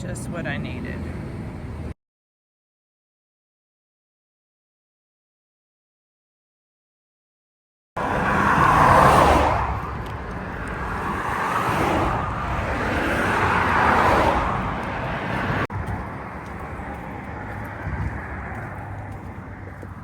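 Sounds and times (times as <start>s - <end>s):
cars passing on highway: 0.0s - 2.0s, 8.0s - 20.0s
steady traffic noise: 0.0s - 2.0s, 8.0s - 20.0s.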